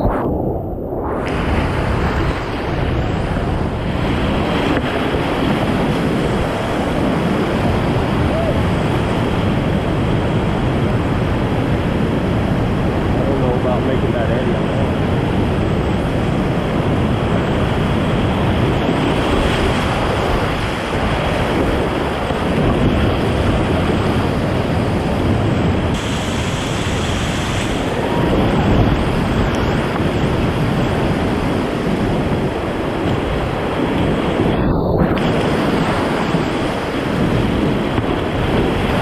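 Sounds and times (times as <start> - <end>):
whitewater rushing: 1.1 - 39.0.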